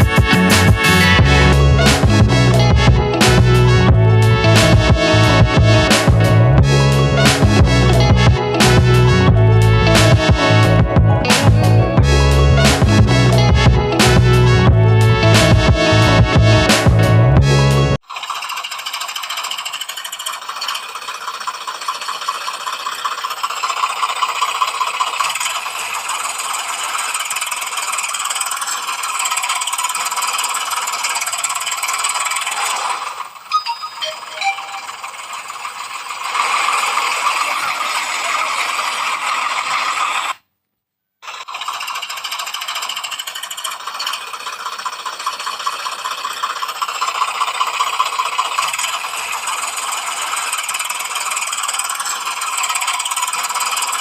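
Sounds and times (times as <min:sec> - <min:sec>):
toy motor and gears rattling: 0:18.0 - 0:40.4, 0:41.2 - 0:54.0.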